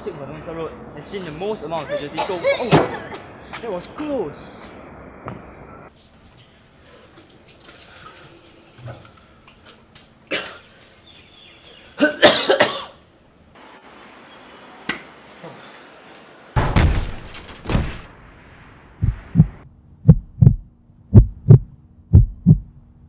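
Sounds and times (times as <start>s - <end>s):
person coughing: 1.9s - 3.2s, 10.3s - 10.6s, 12.0s - 13.0s.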